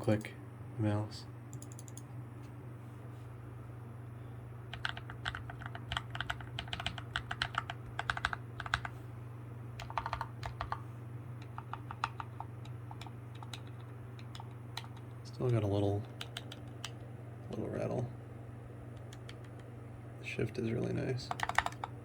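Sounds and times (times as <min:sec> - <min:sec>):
typing on mechanical keyboard: 0:01.6 - 0:02.0, 0:04.7 - 0:08.9, 0:09.8 - 0:10.8, 0:11.4 - 0:17.0, 0:19.0 - 0:19.7, 0:21.3 - 0:21.9.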